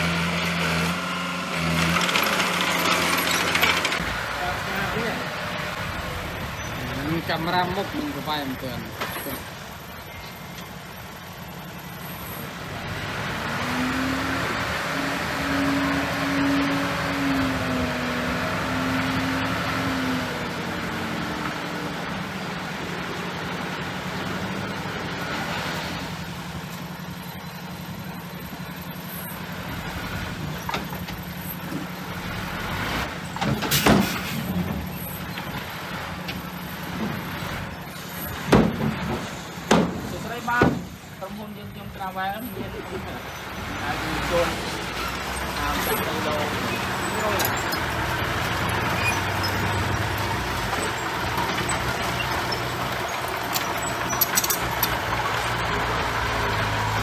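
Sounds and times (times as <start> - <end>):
diesel machinery engine running: 0.0 - 57.0
sharp knocks: 38.5 - 40.9.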